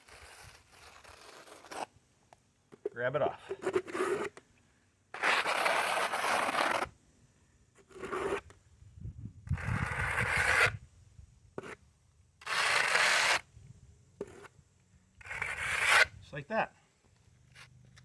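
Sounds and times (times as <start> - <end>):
trowel scraping asphalt: 0.0 - 2.0, 2.7 - 4.5, 5.1 - 7.0, 7.7 - 8.6, 9.4 - 10.9, 11.5 - 13.6, 14.2 - 16.7, 17.3 - 18.0.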